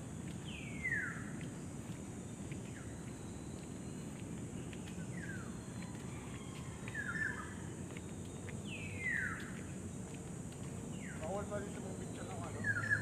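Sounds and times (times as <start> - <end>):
low background noise: 0.0 - 13.0
downslurred bird calls: 12.2 - 13.0.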